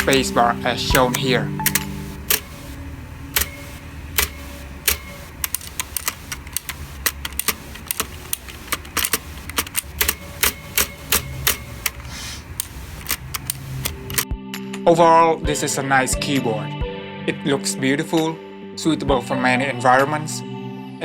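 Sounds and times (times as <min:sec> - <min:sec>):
mechanical keyboard keys clicking: 0:00.0 - 0:14.3.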